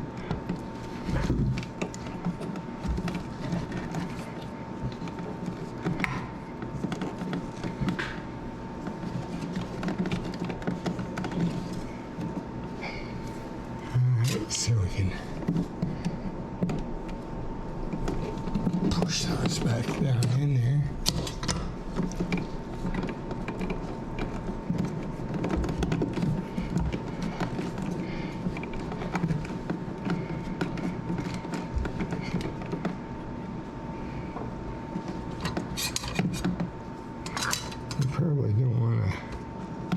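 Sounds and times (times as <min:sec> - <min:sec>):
faint high hum: 0:00.0 - 0:29.4, 0:30.0 - 0:39.9
wires clicking and scraping in box: 0:35.0 - 0:38.2.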